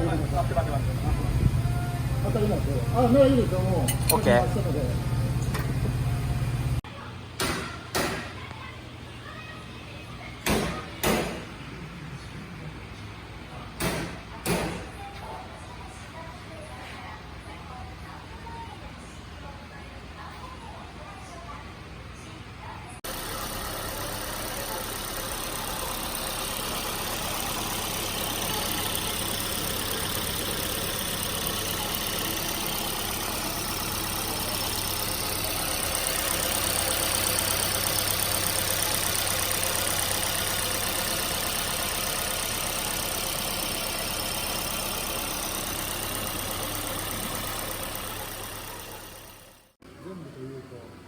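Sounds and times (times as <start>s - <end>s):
car engine idling: 0.0s - 6.8s, 23.0s - 49.8s.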